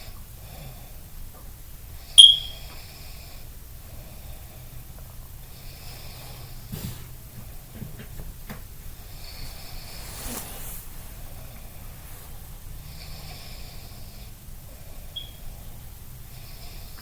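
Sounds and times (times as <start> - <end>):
person snoring: 9.1 - 10.9.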